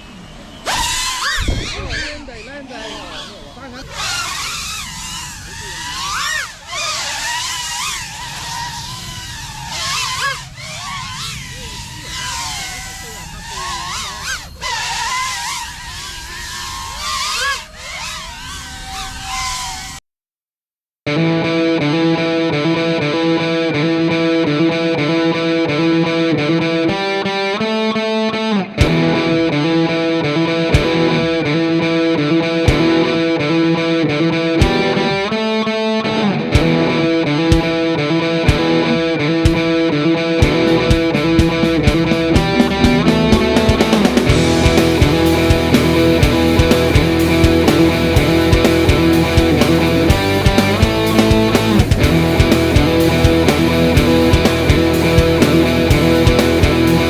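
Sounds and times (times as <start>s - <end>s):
drone motors and propellers whining: 0.0s - 20.0s, 28.8s - 57.0s
rock music with electric guitar: 21.1s - 57.0s.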